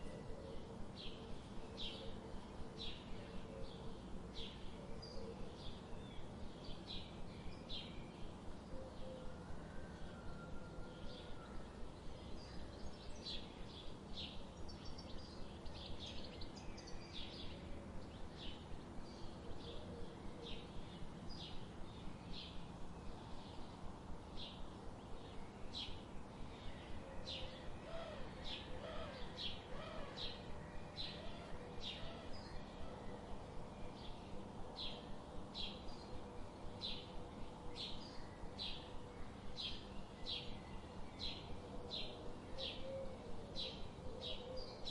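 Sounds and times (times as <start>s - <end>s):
background hiss: 0.0s - 44.9s
lower wavering bird calls: 25.3s - 44.9s.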